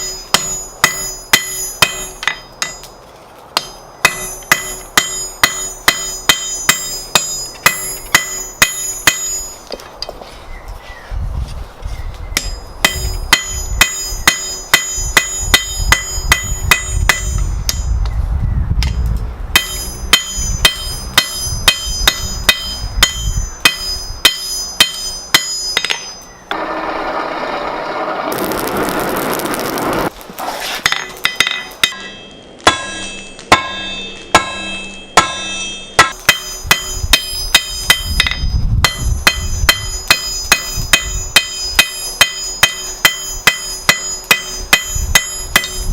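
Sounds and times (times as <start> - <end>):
hammer ringing on anvil: 0.0 - 2.9, 3.6 - 9.7, 12.4 - 18.0, 19.6 - 26.7, 31.2 - 45.9
steady rushing noise: 26.8 - 33.3.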